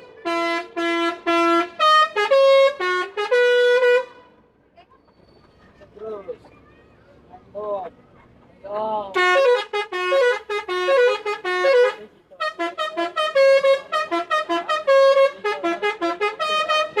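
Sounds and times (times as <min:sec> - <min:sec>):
multi-tone air horn melody: 0:00.0 - 0:04.4, 0:09.2 - 0:17.0.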